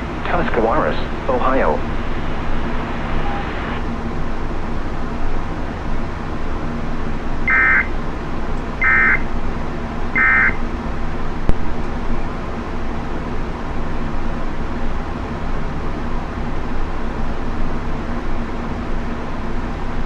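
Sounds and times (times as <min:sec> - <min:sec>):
radio static hiss and hum: 0:00.0 - 0:03.9.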